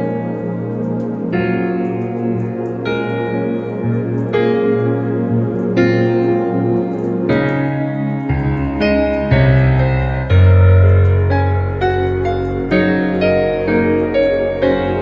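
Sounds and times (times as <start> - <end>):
slow gentle piano music: 0.0 - 15.0
deep bass note: 8.3 - 13.6.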